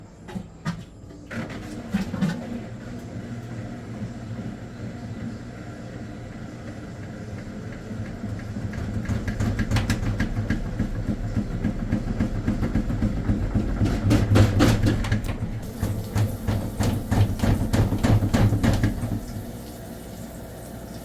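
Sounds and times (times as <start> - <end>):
washer drum rumble: 0.2 - 21.0
rapid even knocking: 8.8 - 19.3.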